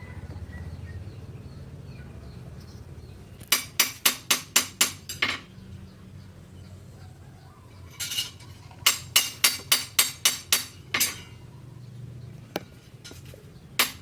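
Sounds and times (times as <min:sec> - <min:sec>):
hammer striking steel on anvil: 0:08.9 - 0:11.2.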